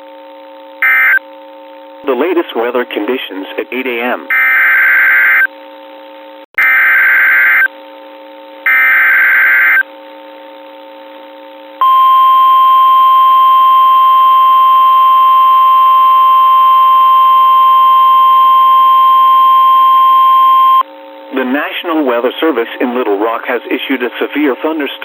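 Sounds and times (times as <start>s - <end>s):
steady alarm tone: 0.8s - 1.2s, 4.3s - 5.5s, 6.6s - 7.7s, 8.6s - 9.8s, 11.8s - 20.8s.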